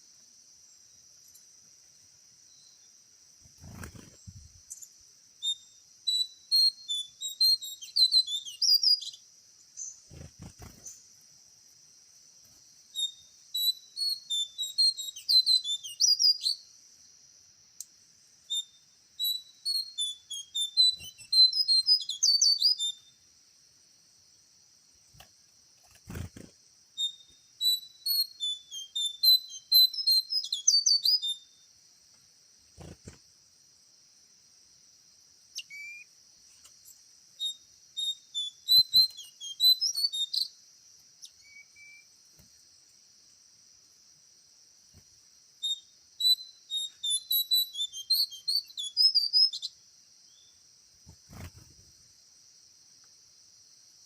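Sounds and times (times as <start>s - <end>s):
insects droning: 0.0s - 54.0s
songbird chirping and whistling: 3.6s - 11.0s, 12.9s - 16.7s, 17.8s - 23.2s, 27.0s - 31.7s, 35.6s - 36.1s, 36.7s - 40.6s, 41.2s - 42.2s, 45.6s - 50.6s.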